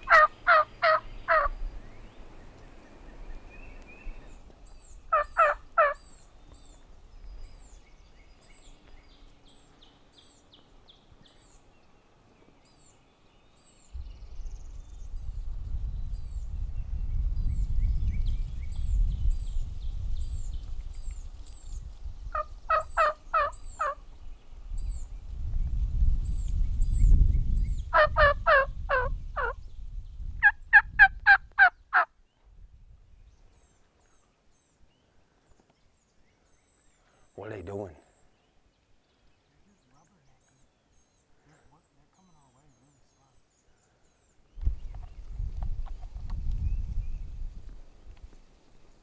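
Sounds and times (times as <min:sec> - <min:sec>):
turkeys gobbling: 0:00.0 - 0:01.6, 0:05.1 - 0:06.0, 0:22.3 - 0:24.0, 0:27.9 - 0:29.6, 0:30.4 - 0:32.1
songbird chirping: 0:00.0 - 0:49.0.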